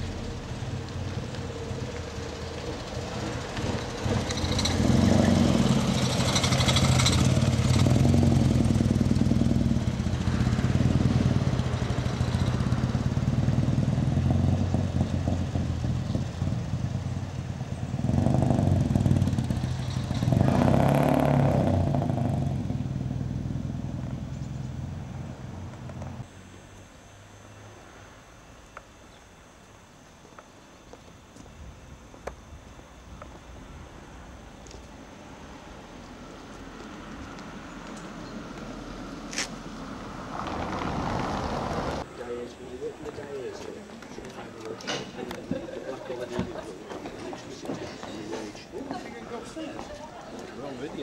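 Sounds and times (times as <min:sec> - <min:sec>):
small car engine running: 0:00.0 - 0:26.8.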